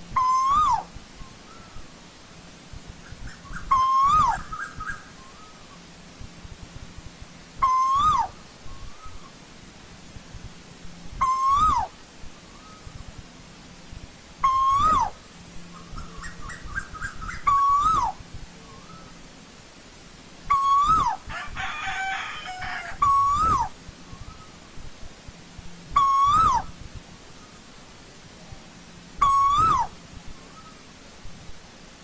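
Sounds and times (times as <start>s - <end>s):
bird calling whistled notes: 0.1s - 1.8s, 3.0s - 5.9s, 7.6s - 9.4s, 11.2s - 13.2s, 14.4s - 19.2s, 20.5s - 24.6s, 26.0s - 26.8s, 29.2s - 30.9s.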